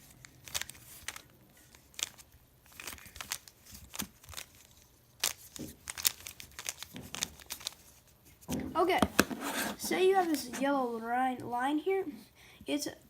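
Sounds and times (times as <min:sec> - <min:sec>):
puzzle cube clicking and scraping: 0:08.9 - 0:10.6.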